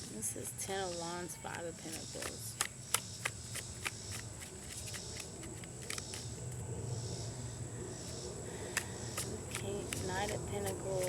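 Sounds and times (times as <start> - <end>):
steady low hum: 0.0 - 11.0
cards clicking and snapping: 1.5 - 6.4, 8.5 - 11.0.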